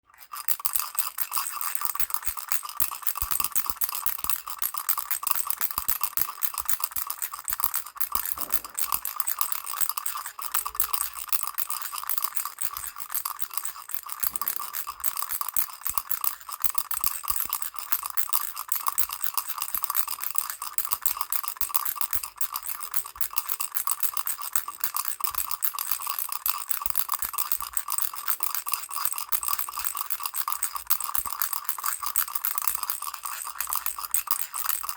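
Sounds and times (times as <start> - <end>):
baby rattle shaken rapidly: 0.1 - 34.9.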